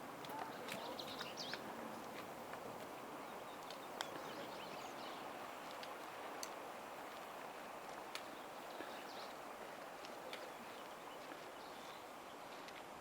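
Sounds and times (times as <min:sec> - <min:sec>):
steady outdoor hiss: 0:00.0 - 0:13.0
footsteps on rocks: 0:00.2 - 0:04.4, 0:05.4 - 0:13.0.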